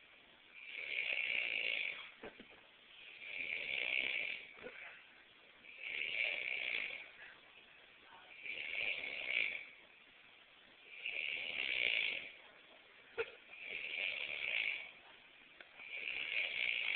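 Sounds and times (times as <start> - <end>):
quiet breaths: 0.0 - 16.9
person snoring heavily: 0.6 - 2.1, 3.2 - 4.8, 5.7 - 7.1, 8.4 - 9.7, 10.9 - 12.4, 13.5 - 15.0, 15.8 - 16.9.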